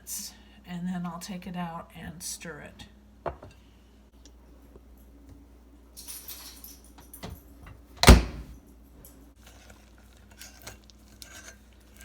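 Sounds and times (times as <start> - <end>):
microwave door thunk: 8.0 - 8.5.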